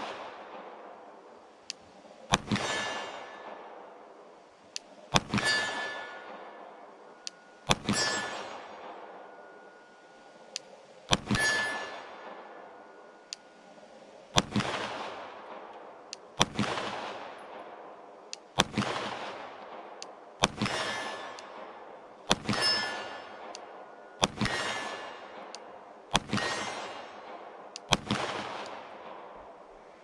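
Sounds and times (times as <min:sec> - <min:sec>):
pistol shots: 0:02.3 - 0:04.1, 0:14.4 - 0:29.8
metallic ringing echo: 0:02.4 - 0:04.2, 0:05.2 - 0:13.8, 0:20.6 - 0:27.7.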